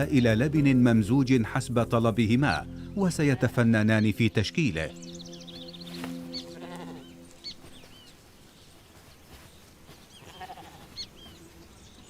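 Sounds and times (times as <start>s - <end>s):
small birds chirping: 0.0s - 1.0s, 2.3s - 12.0s
sheep bleating: 3.1s - 3.7s, 6.4s - 7.6s, 10.1s - 11.4s.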